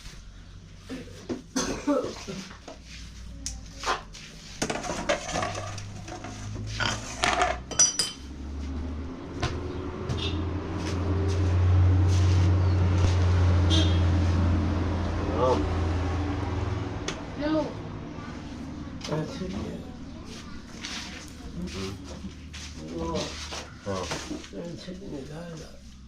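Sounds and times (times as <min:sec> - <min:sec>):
clinks and knocks of hard objects: 0:04.6 - 0:08.3.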